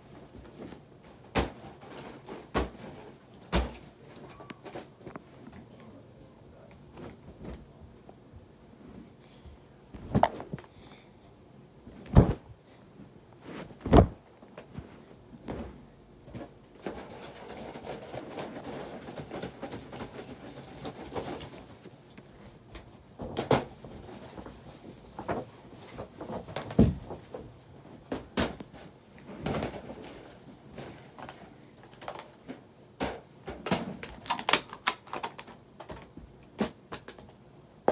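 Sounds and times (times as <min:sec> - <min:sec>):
shuffling noise: 0:08.7 - 0:10.9, 0:11.8 - 0:16.6.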